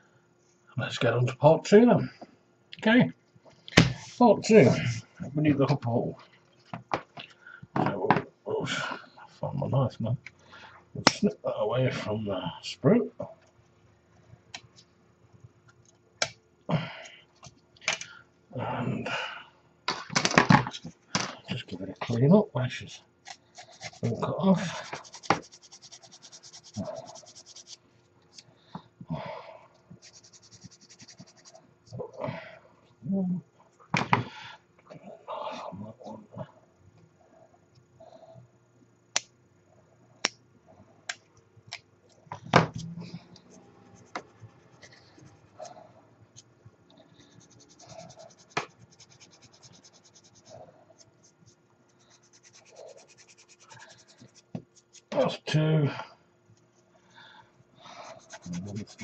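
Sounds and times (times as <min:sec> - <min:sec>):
fine scratching on plastic: 0:23.3 - 0:27.8, 0:30.0 - 0:31.6, 0:47.2 - 0:55.1, 0:57.9 - 0:59.0
knife scraping plastic: 0:23.3 - 0:27.8.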